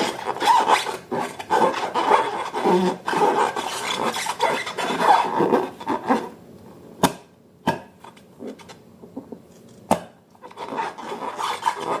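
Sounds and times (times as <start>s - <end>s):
scraping and rubbing of mixing: 0.0s - 6.4s, 10.4s - 12.0s.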